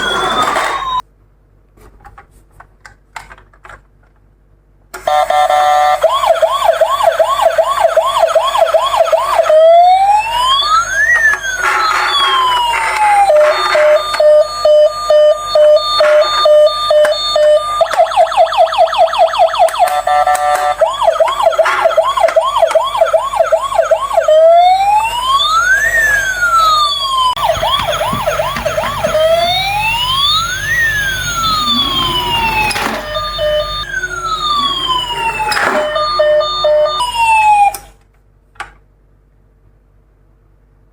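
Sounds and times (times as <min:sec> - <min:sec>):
ambulance siren yelping and wailing: 0:00.0 - 0:01.0, 0:05.1 - 0:37.9
siren beeping: 0:00.0 - 0:01.0, 0:05.1 - 0:37.9.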